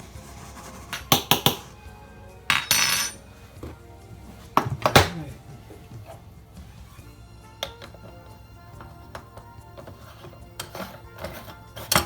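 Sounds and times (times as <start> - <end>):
metal scraping rub: 0.0 - 1.8, 9.6 - 12.0
faint background music: 0.0 - 12.0
metal pot clinking: 2.5 - 3.3.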